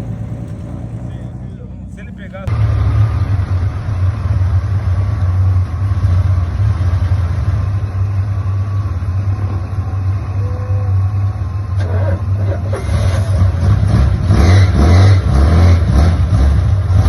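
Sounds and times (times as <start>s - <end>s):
car exhaust rumbling: 0.0s - 17.0s.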